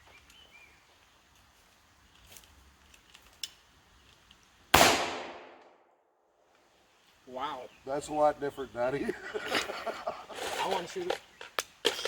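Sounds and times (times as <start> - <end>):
revolver gunshot: 4.7 - 5.8.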